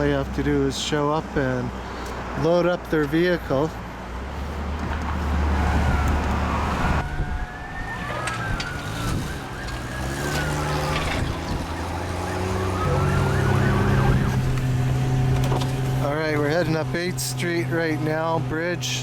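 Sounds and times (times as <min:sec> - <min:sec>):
low vehicle hum: 0:00.0 - 0:19.0
siren wailing: 0:05.4 - 0:14.7.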